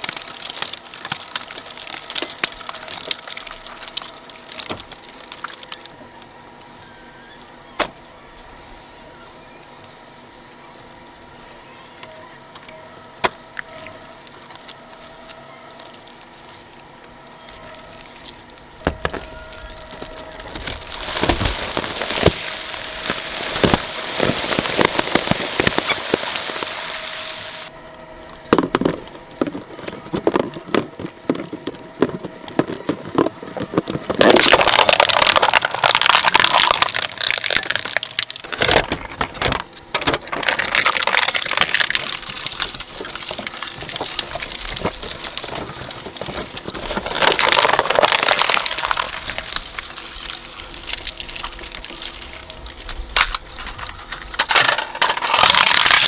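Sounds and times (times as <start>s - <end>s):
shredder motor humming: 0.0s - 56.0s
toys crunching and cracking: 0.0s - 56.0s.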